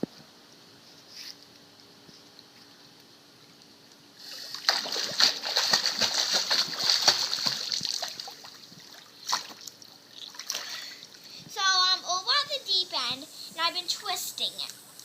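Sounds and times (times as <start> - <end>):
pool water splashing: 4.2 - 11.2.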